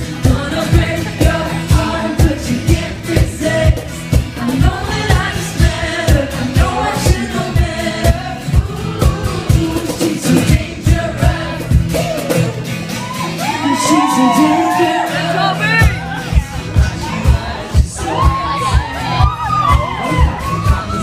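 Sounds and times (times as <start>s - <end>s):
lead vocals singing: 0.0s - 21.0s
live pop band playing: 0.0s - 21.0s
kick drum beat: 15.8s - 21.0s.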